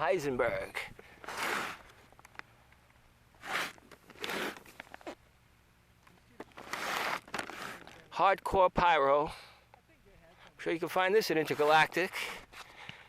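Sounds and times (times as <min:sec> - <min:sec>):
short scraping noises: 0:01.2 - 0:01.9, 0:03.4 - 0:05.2, 0:06.6 - 0:08.0, 0:11.4 - 0:12.7.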